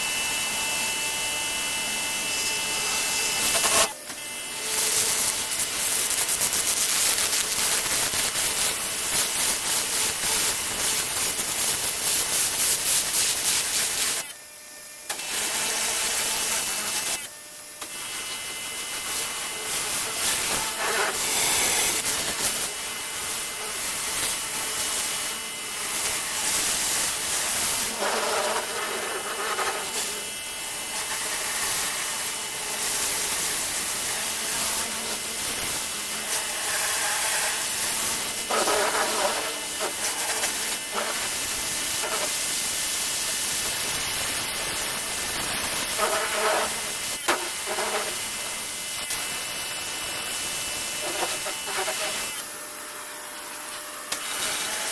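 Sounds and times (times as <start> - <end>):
pressure washer spraying: 4.6 - 14.2, 18.9 - 25.2, 31.3 - 52.4, 54.1 - 54.9.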